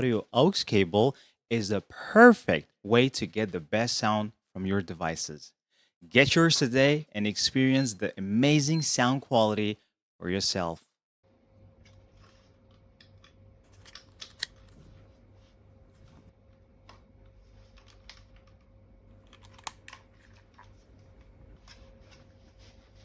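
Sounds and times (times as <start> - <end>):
low steady hum: 11.3 - 23.0.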